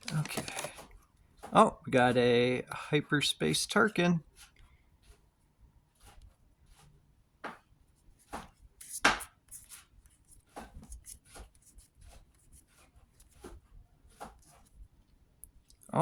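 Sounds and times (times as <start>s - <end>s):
trading cards snapping and sliding: 0.0s - 0.9s.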